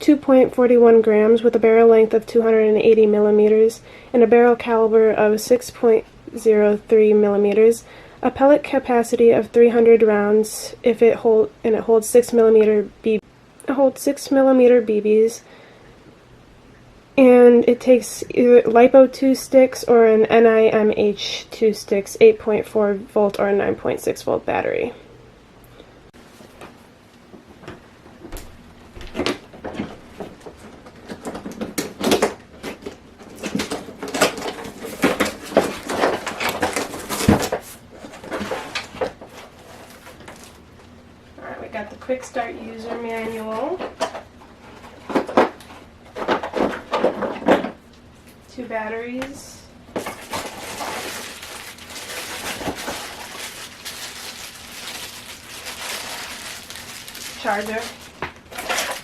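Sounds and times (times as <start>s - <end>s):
packaging rustling and clicking: 26.5s - 40.6s, 50.0s - 59.0s.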